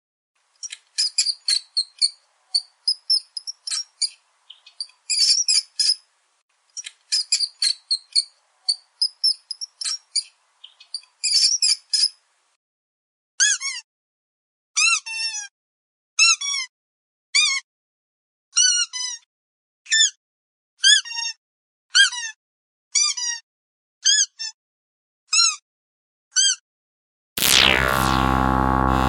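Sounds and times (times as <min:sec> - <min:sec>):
squeaky dog toy: 0:13.4 - 0:13.8, 0:14.8 - 0:15.5, 0:16.2 - 0:16.7, 0:18.6 - 0:19.2, 0:20.8 - 0:21.4, 0:22.0 - 0:22.4, 0:23.0 - 0:23.4, 0:24.0 - 0:24.6, 0:26.4 - 0:26.6
squeak gliding down in pitch: 0:27.4 - 0:29.0.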